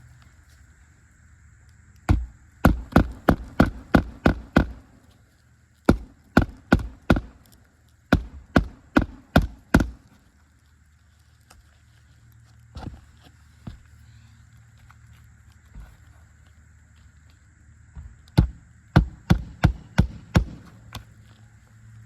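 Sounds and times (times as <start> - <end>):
hammer striking nails: 5.9 - 7.3, 8.1 - 10.0.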